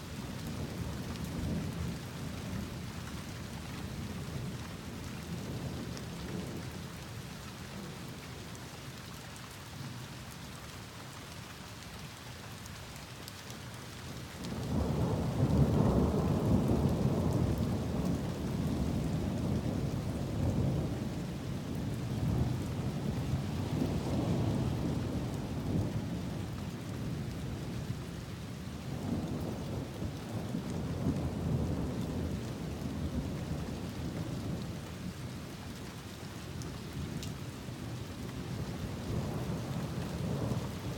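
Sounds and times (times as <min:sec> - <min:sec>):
rain falling: 0:00.0 - 0:40.9
thunder rumbling: 0:38.6 - 0:40.9.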